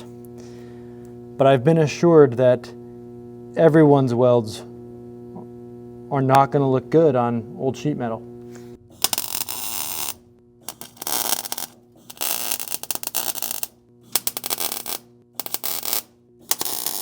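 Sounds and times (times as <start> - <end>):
welding arc crackling: 8.8 - 17.0.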